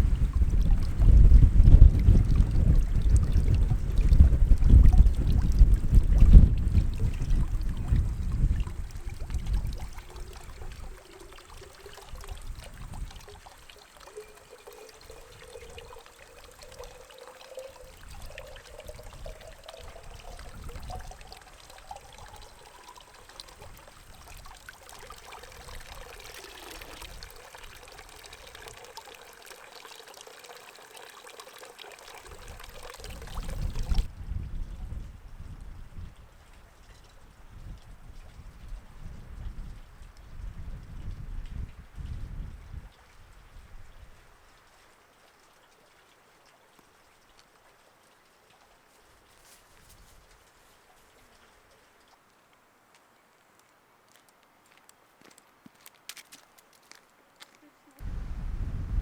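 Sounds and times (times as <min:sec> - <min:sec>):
wind gusting against microphone: 0:00.0 - 0:13.5, 0:17.6 - 0:28.8, 0:32.2 - 0:36.4, 0:37.2 - 0:44.2, 0:58.0 - 0:59.0.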